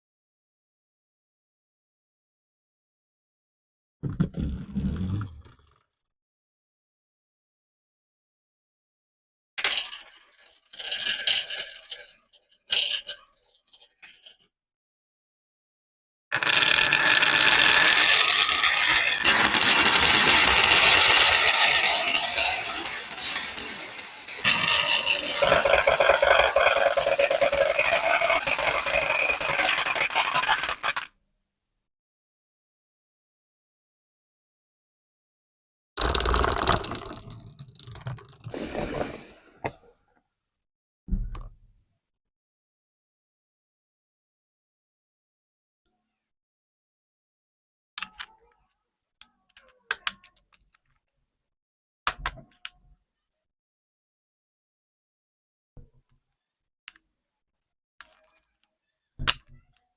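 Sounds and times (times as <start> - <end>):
marbles rattling down wooden slope: 16.4 - 31.1.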